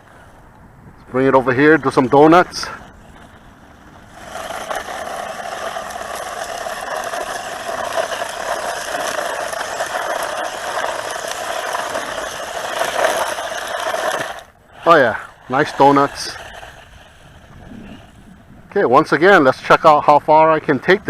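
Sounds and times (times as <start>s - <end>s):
toy truck electric motor whining: 2.2s - 17.6s.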